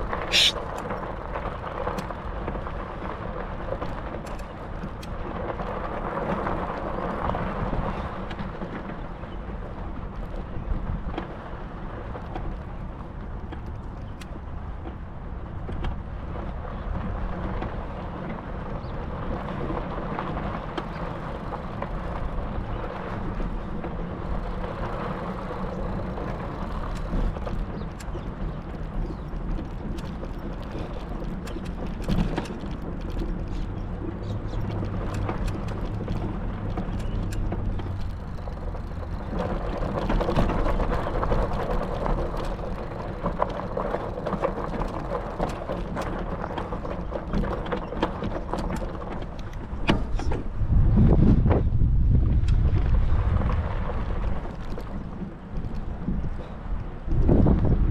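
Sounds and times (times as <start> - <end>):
vehicle rumble: 0.0 - 57.9
wind on microphone: 15.6 - 57.9.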